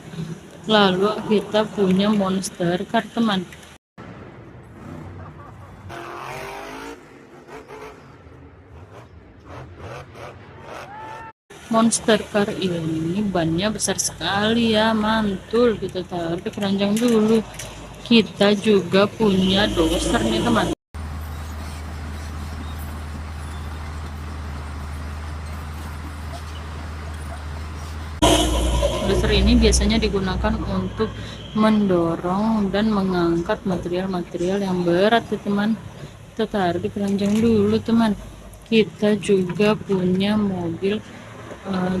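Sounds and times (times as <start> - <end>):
steady low hum: 28.2 - 34.4.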